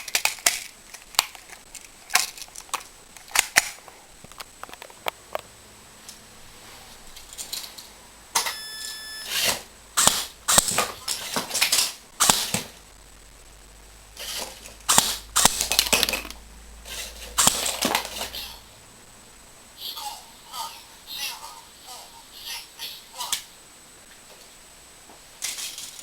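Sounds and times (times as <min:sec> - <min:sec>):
brief steady tone: 0:08.4 - 0:09.4
toy gun shots: 0:09.3 - 0:12.8, 0:14.3 - 0:16.4, 0:17.4 - 0:18.3.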